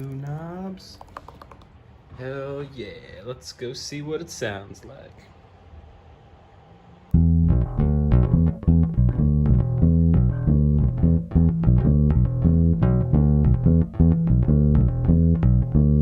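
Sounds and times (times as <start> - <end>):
bass guitar plucked notes: 7.1 - 16.0.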